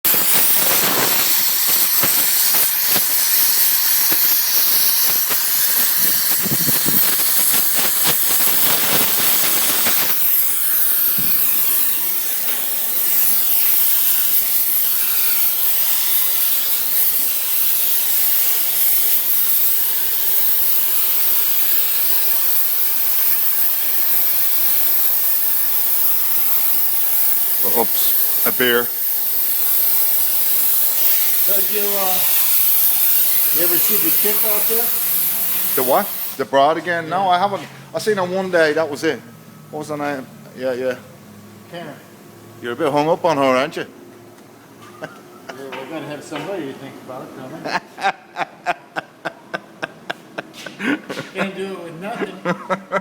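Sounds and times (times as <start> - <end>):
torch hissing and sputtering: 0.0 - 36.6.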